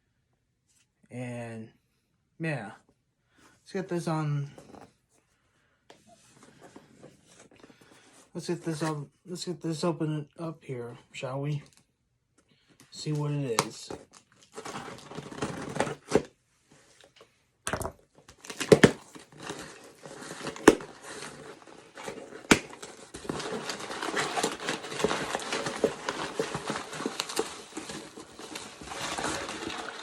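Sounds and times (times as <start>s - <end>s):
packing material crinkling: 13.0s - 16.3s, 18.3s - 30.0s
packing snapping and tearing: 13.1s - 16.3s, 18.3s - 30.0s.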